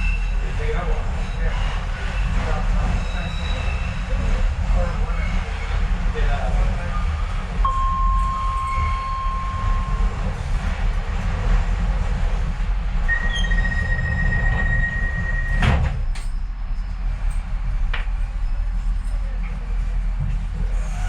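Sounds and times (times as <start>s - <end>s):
train rumble: 0.0s - 21.0s
high-pitched wheel squeal: 7.7s - 10.7s, 13.1s - 15.6s.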